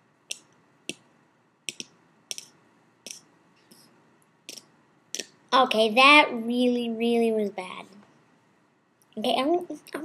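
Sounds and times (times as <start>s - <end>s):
boy's mouth clicks: 1.7s - 3.3s, 4.5s - 5.4s.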